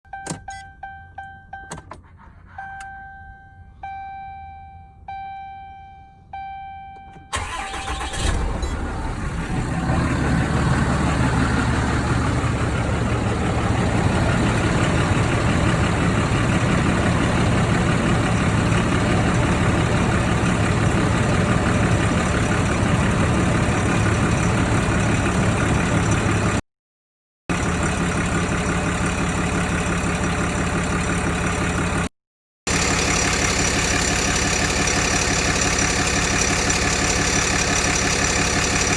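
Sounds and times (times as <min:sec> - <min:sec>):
dashboard chime ringing: 0:00.1 - 0:02.0, 0:02.6 - 0:07.4
engine rattle: 0:00.1 - 0:04.0, 0:07.0 - 0:26.6, 0:27.5 - 0:32.1, 0:32.7 - 0:38.9
diesel engine cranking and idling: 0:00.1 - 0:26.6, 0:27.5 - 0:32.1, 0:32.7 - 0:38.9.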